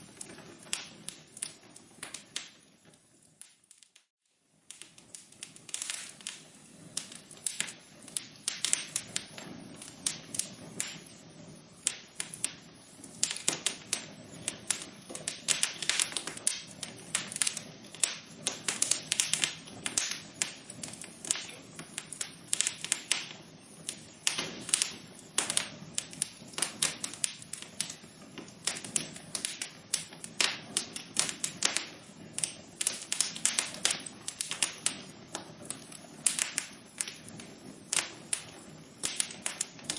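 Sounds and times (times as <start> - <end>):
soft steady hiss: 0.0 - 39.9
wood fire crackling: 0.0 - 39.9.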